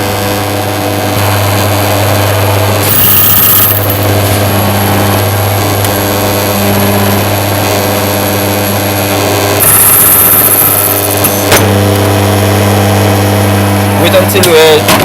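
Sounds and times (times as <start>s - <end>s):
key cutting machine motor: 0.0s - 15.0s.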